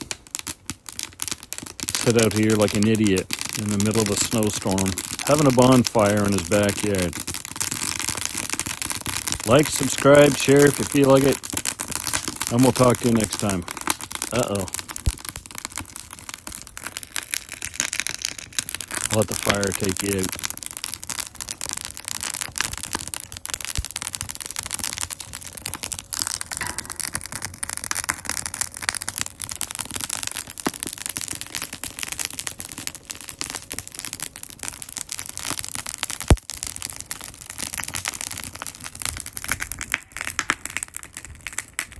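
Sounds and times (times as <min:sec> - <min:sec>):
fire crackling and popping: 0:00.0 - 0:41.9.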